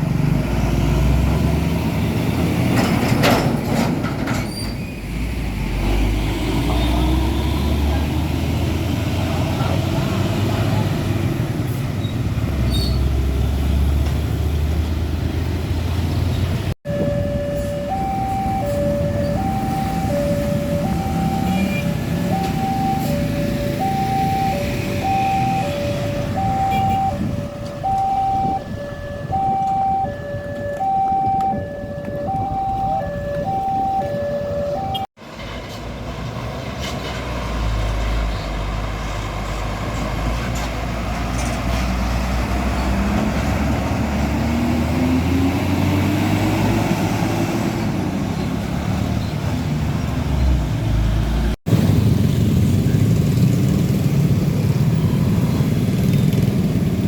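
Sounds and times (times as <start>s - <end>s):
diesel truck engines rumbling: 0.0s - 57.0s
two-tone warning siren: 16.9s - 35.1s.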